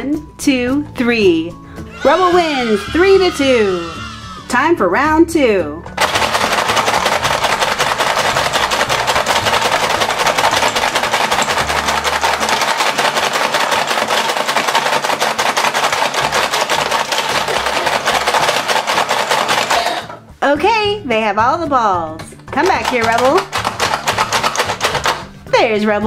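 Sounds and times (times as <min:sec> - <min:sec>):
toy balls clattering: 0:06.0 - 0:20.2, 0:22.6 - 0:25.4.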